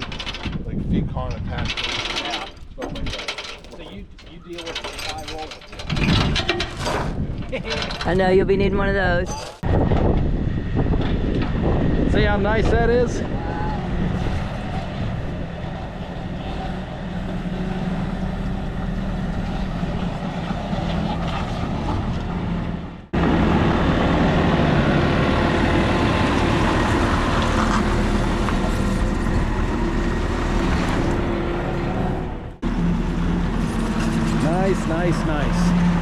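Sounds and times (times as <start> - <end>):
diesel engine running: 9.6 - 36.0.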